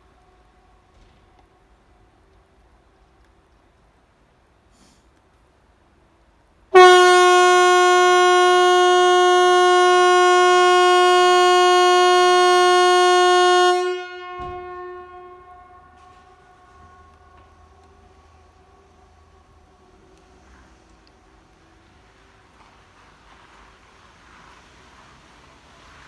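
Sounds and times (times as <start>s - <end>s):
warning siren steady tone: 6.8s - 20.3s.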